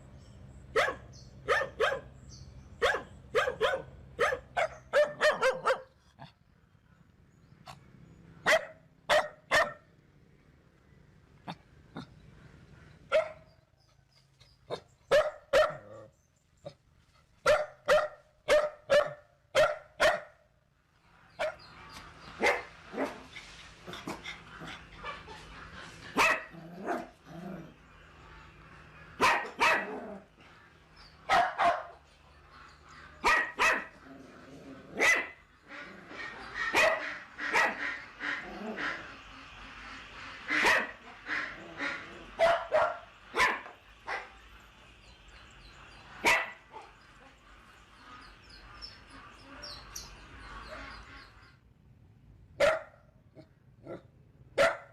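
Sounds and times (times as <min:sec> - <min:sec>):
dog barking: 0:00.7 - 0:02.2, 0:02.8 - 0:06.0, 0:08.4 - 0:09.9, 0:13.1 - 0:13.5, 0:14.7 - 0:16.1, 0:17.4 - 0:20.4, 0:21.4 - 0:21.6, 0:22.4 - 0:23.3, 0:26.1 - 0:27.1, 0:29.2 - 0:30.1, 0:31.3 - 0:32.0, 0:33.2 - 0:34.0, 0:35.0 - 0:35.4, 0:36.6 - 0:37.9, 0:40.5 - 0:41.0, 0:42.4 - 0:44.4, 0:46.2 - 0:47.0, 0:52.6 - 0:54.9.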